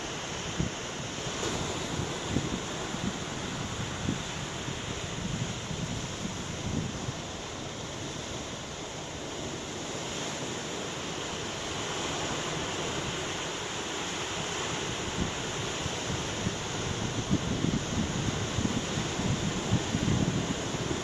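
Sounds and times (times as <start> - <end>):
ocean surf roaring: 0.0 - 21.0
wind along the shore: 0.0 - 21.0.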